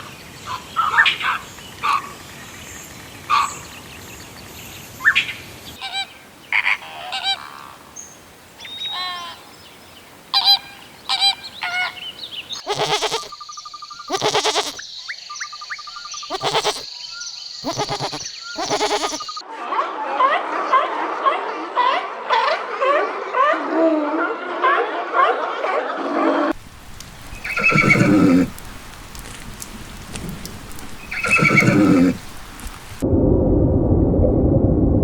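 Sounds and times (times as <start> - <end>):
animal calls: 5.8 - 7.8, 10.4 - 12.0, 12.6 - 13.3, 14.0 - 14.8, 16.2 - 16.9, 17.6 - 19.4, 27.0 - 33.0
chatter of small chirps: 10.4 - 19.4.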